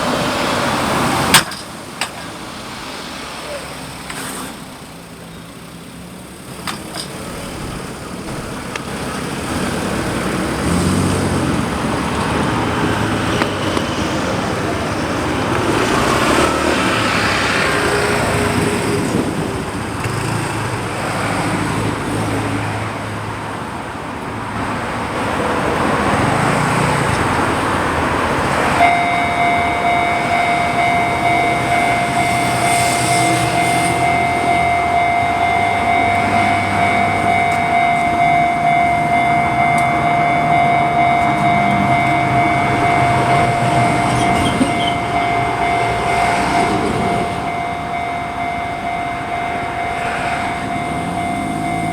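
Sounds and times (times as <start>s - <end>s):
cars passing: 0.0s - 51.9s
level crossing warning bell: 0.0s - 51.9s.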